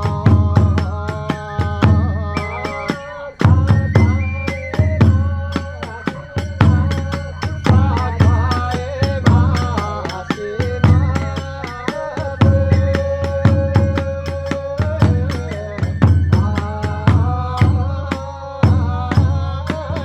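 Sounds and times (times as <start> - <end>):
bamboo flute melody: 0.0 - 8.4, 10.8 - 18.1
large drum beating: 0.0 - 20.0.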